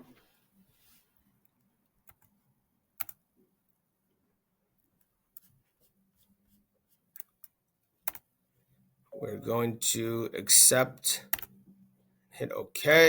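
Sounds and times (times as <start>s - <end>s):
computer keystrokes and clicks: 2.0s - 2.3s, 3.0s - 3.2s, 7.1s - 8.3s, 11.2s - 11.5s.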